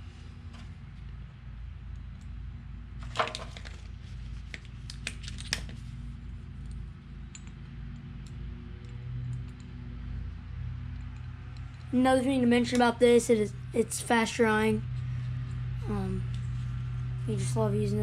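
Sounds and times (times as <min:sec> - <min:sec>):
steady low hum: 0:00.0 - 0:18.0
small metal parts clinking: 0:04.5 - 0:05.8.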